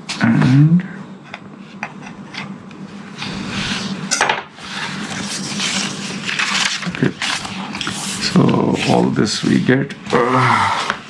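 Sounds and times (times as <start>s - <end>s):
paper and cardboard rustling: 4.6s - 9.8s.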